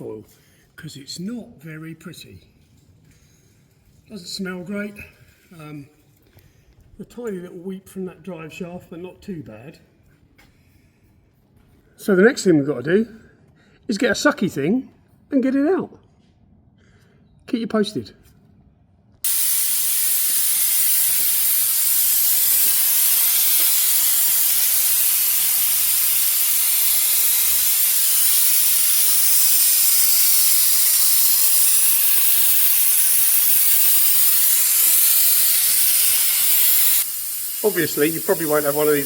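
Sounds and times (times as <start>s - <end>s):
compressed air hissing: 19.2s - 39.0s.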